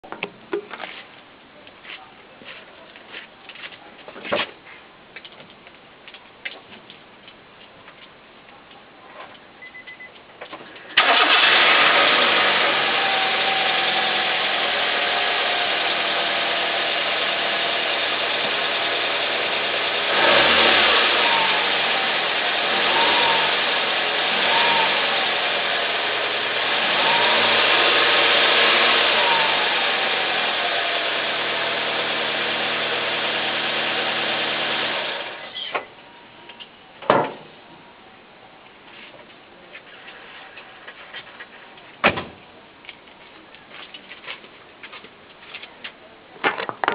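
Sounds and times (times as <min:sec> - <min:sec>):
car engine idling and revving: 0:11.0 - 0:35.4
thump: 0:37.1 - 0:37.5, 0:42.0 - 0:42.4.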